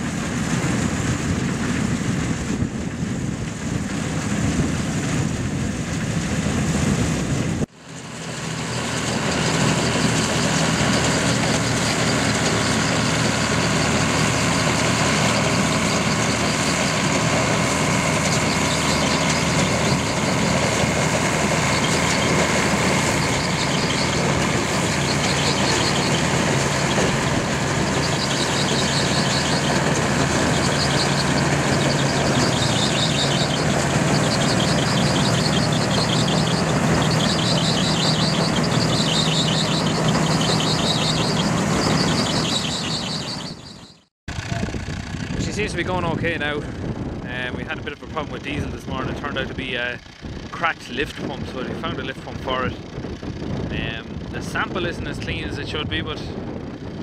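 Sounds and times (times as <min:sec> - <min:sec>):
wind on microphone: 0:00.0 - 0:07.7, 0:44.3 - 0:57.0
diesel engine running: 0:00.0 - 0:57.0.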